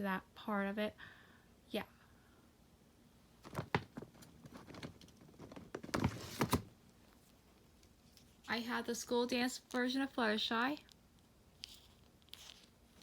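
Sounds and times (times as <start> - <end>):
plastic rustle: 11.6 - 13.0.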